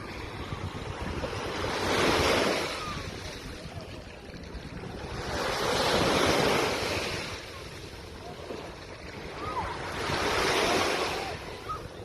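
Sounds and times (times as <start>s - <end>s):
sea waves breaking: 0.0s - 12.0s
wind on microphone: 0.0s - 12.0s.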